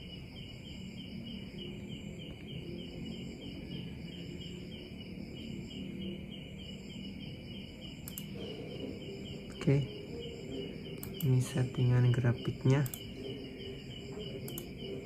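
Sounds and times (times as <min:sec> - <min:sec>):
insects chirping: 0:00.0 - 0:15.0
low hum: 0:00.0 - 0:15.0
sharp click: 0:08.0 - 0:08.3.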